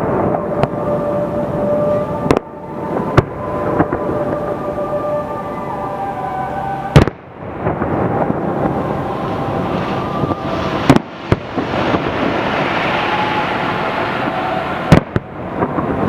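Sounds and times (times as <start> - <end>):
fireworks crackling and rumbling: 0.0 - 5.2, 6.9 - 16.0
fireworks bangs: 1.8 - 4.5, 6.9 - 16.0.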